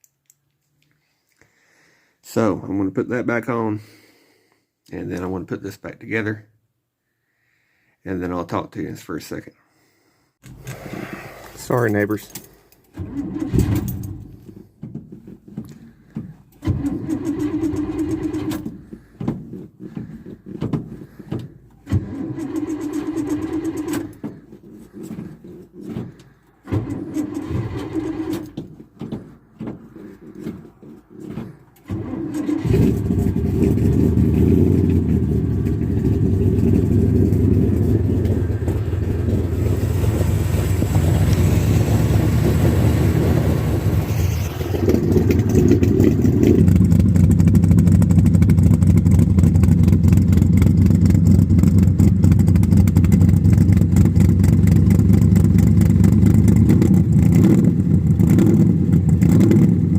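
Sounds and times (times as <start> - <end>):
car engine cranking: 10.4 - 59.9
car engine revving and idling: 16.6 - 59.9.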